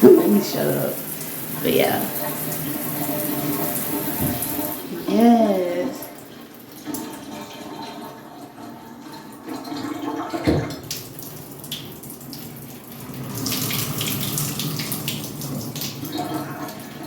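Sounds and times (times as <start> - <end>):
shower spraying into tub: 0.0 - 6.1, 10.4 - 17.0
knock: 4.2 - 4.6.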